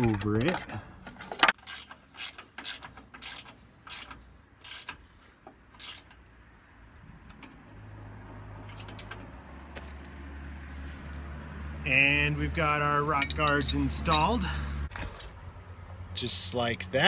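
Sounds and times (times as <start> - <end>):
hand ratchet clicking: 1.6 - 5.0.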